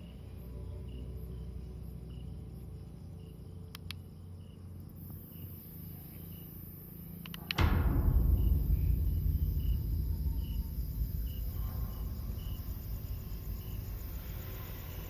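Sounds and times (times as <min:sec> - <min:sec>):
crickets chirping: 0:00.0 - 0:15.0
low steady hum: 0:00.0 - 0:15.0
sharp clicks: 0:03.7 - 0:04.0, 0:07.2 - 0:11.1.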